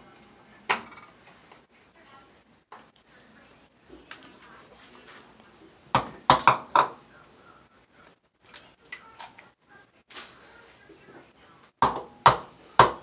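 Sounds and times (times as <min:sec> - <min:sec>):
kitchenware clattering: 0:05.9 - 0:07.0.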